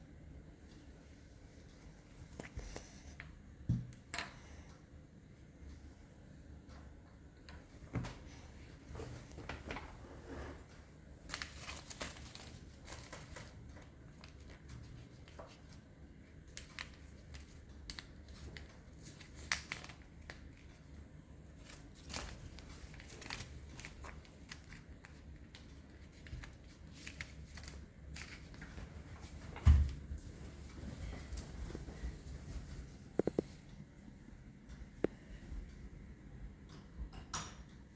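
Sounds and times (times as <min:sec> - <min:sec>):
paper folding and crinkling: 0:08.2 - 0:33.4.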